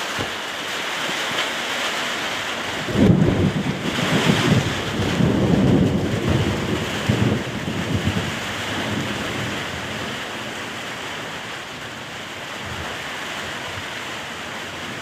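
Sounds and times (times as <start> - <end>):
heavy rain: 0.0 - 15.0
rolling thunder: 2.6 - 12.0.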